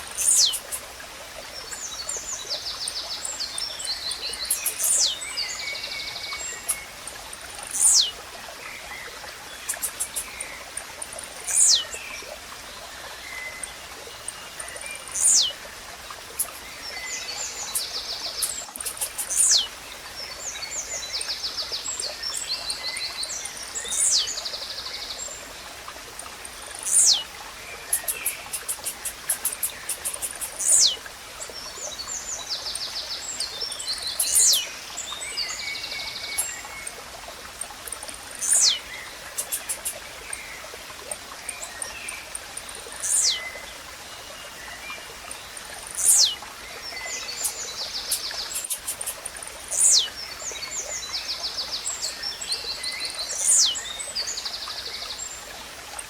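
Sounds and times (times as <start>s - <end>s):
flowing water: 0.0s - 56.0s
birds trilling: 0.1s - 0.8s, 7.7s - 8.1s, 11.4s - 11.8s, 15.1s - 15.6s, 17.6s - 19.7s, 26.8s - 27.2s, 27.9s - 31.0s, 34.2s - 34.7s, 38.4s - 40.0s, 43.0s - 43.4s, 45.8s - 46.4s.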